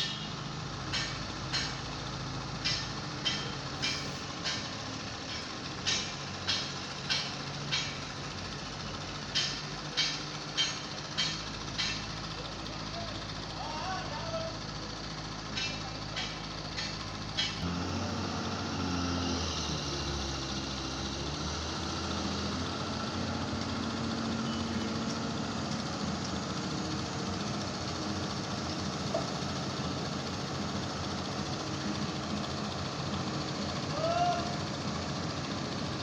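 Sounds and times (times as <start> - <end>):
heavy diesel engine running: 0.0 - 36.0.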